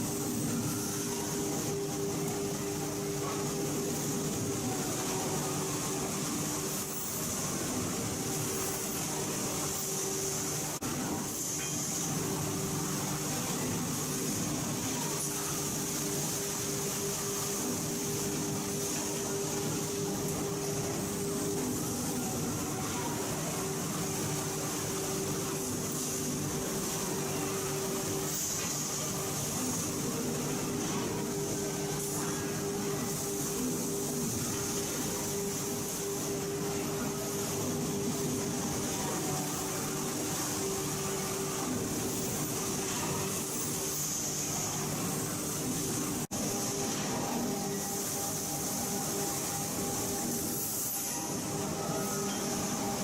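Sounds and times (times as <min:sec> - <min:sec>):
factory machinery hum and hiss: 0:00.0 - 0:53.0.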